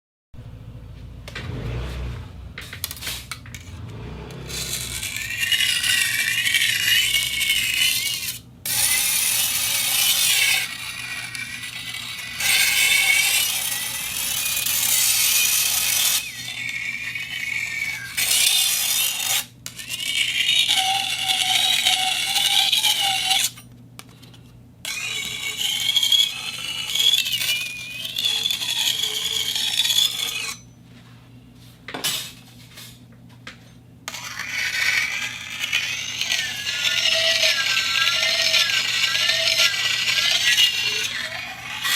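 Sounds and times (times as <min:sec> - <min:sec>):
metal plate scraping on turntable: 0:01.5 - 0:23.6, 0:34.1 - 0:41.9
high-pitched squeal: 0:03.8 - 0:23.6, 0:24.9 - 0:30.6, 0:34.1 - 0:41.9.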